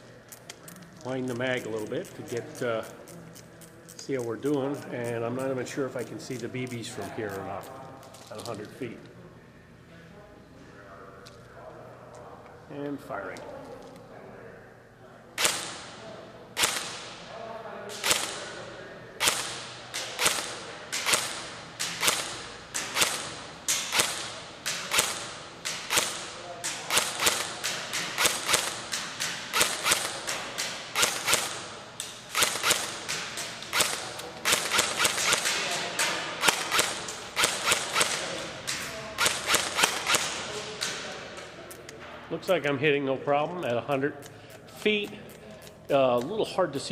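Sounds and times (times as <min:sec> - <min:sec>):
airsoft gun shots: 0:15.4 - 0:16.0, 0:16.6 - 0:17.2, 0:17.9 - 0:18.5, 0:19.2 - 0:31.6, 0:32.3 - 0:35.6, 0:36.4 - 0:38.3, 0:39.2 - 0:40.9.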